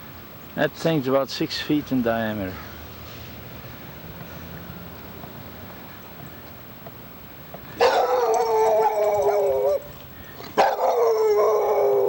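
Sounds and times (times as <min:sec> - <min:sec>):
dog howling: 0:07.8 - 0:09.9, 0:10.6 - 0:12.0.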